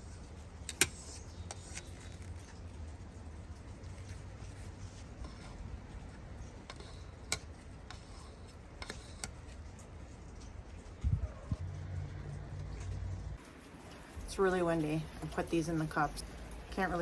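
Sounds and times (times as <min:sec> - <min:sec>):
wind rumbling on microphone: 0:10.8 - 0:13.4.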